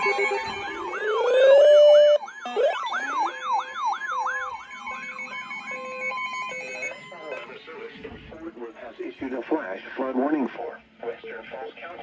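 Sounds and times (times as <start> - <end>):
siren yelp: 0.0 - 7.7
loud steady tone: 0.0 - 8.0.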